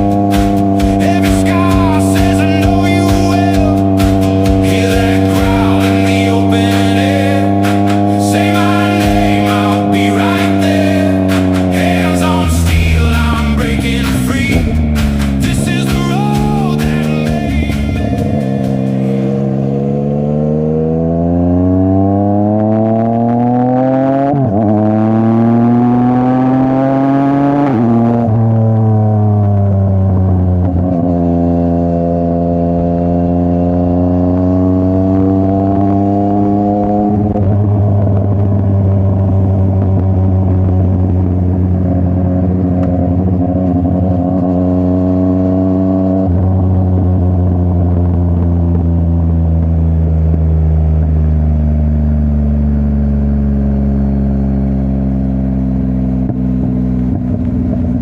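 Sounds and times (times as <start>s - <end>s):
motorcycle engine revving through gears: 0.0s - 2.3s, 3.6s - 58.0s.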